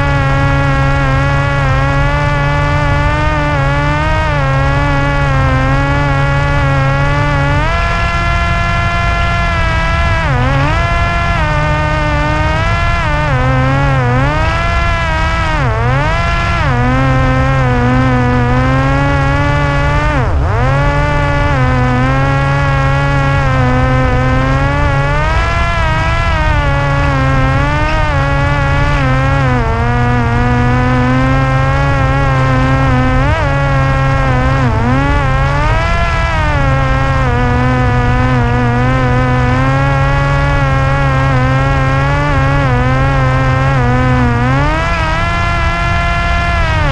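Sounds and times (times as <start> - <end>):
electric propeller motor whine: 0.0 - 46.9
low rumble: 0.0 - 46.9.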